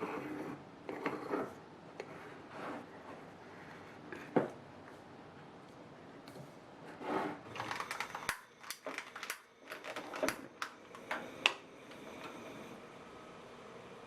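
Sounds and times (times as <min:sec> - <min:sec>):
objects clicking and clattering: 0:07.5 - 0:12.4.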